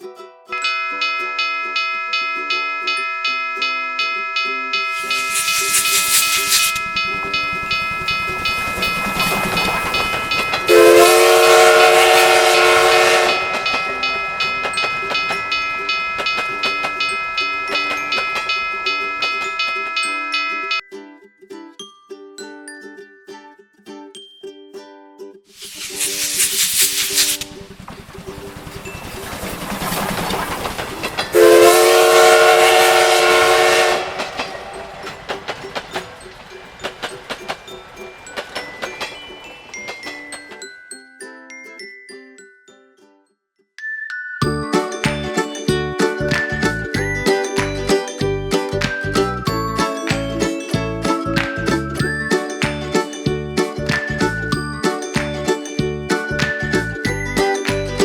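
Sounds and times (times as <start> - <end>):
railroad crossing bell ringing: 0.5 - 21.2, 28.4 - 41.1, 44.4 - 58.0
steam whistle blowing: 0.6 - 20.8, 31.3 - 34.7
steam train hissing and rumbling: 4.8 - 20.1, 25.5 - 39.7, 44.5 - 52.7
wheels clacking over rail joints: 6.8 - 10.9, 11.8 - 20.1, 27.6 - 31.4, 33.9 - 40.7.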